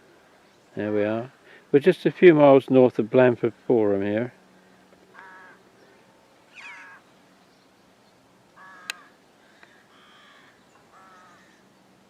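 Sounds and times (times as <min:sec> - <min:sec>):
crow cawing: 0:05.1 - 0:05.7, 0:06.5 - 0:07.0, 0:08.6 - 0:11.6.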